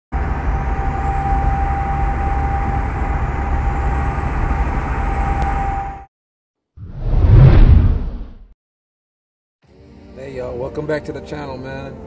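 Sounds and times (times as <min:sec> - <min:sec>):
diesel truck engine rumbling: 0:00.2 - 0:06.0
whoosh: 0:06.8 - 0:08.5.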